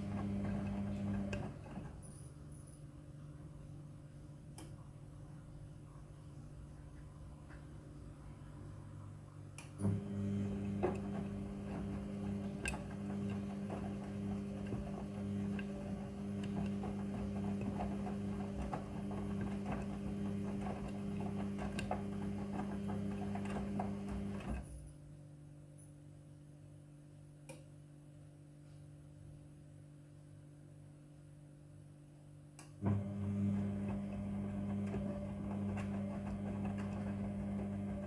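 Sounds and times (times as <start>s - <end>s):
washing machine running: 0.0s - 2.1s, 9.8s - 24.9s, 32.8s - 38.0s.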